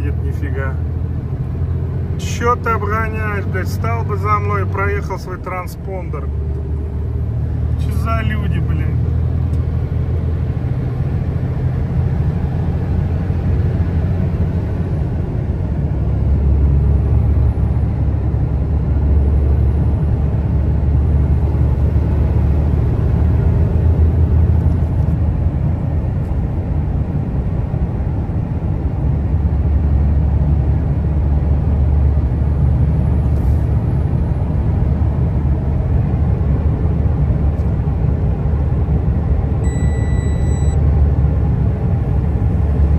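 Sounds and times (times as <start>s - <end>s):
road noise: 0.0s - 42.9s
truck engine drone: 0.0s - 42.9s.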